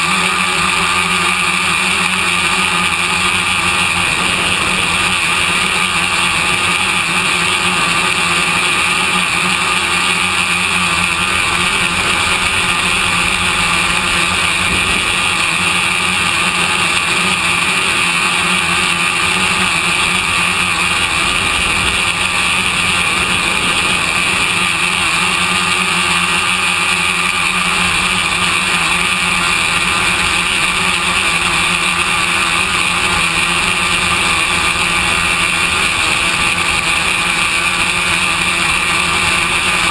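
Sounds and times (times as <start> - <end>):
drone motors whining: 0.0 - 39.9
rushing air noise: 2.9 - 8.9, 10.4 - 31.4.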